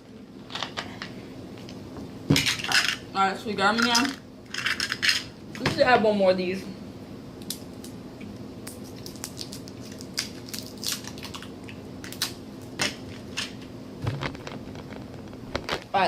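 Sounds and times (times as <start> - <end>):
faint steady hum: 0.0 - 16.0
candy wrapper crinkling: 8.7 - 12.4.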